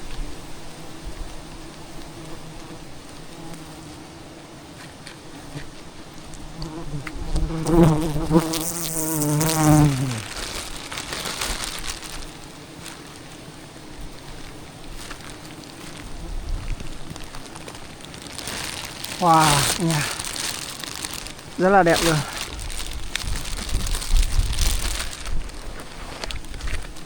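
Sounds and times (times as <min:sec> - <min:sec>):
honeybees buzzing: 0:00.4 - 0:26.1.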